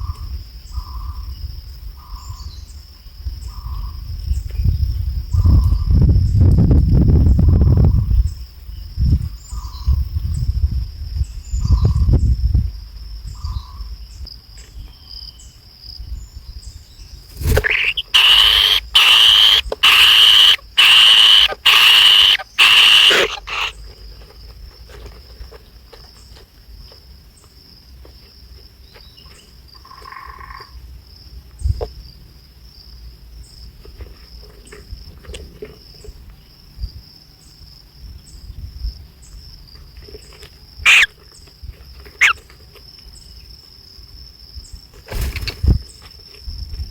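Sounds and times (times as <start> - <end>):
high-pitched insect trill: 14.8 - 23.8, 40.8 - 41.1
nestling birds begging calls: 17.4 - 23.8, 40.9 - 41.1.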